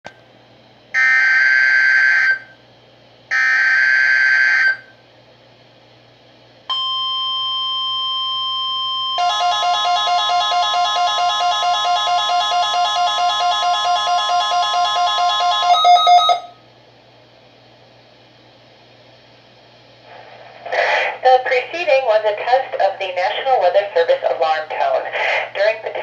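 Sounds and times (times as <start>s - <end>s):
steady warning alarm tone: 1.0s - 2.6s, 3.3s - 4.9s, 6.7s - 16.6s
lower pulsing alarm tone: 6.7s - 16.6s.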